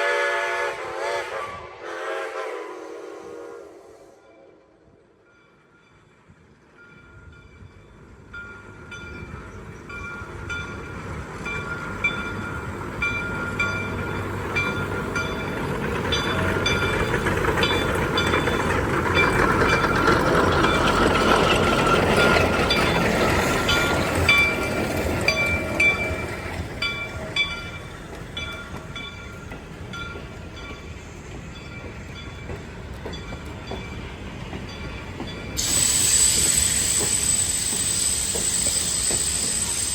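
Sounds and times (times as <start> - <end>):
train wheels clattering on rail: 6.2 - 39.9
high metallic ringing: 35.3 - 39.9.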